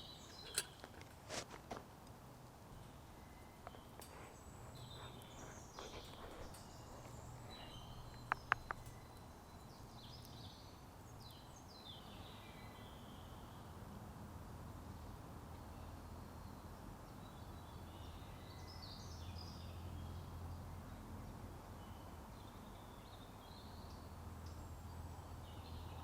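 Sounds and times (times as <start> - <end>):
woodland birds singing: 0.0 - 0.9, 2.7 - 13.7, 15.6 - 21.2
sharp clicks: 2.8 - 9.3.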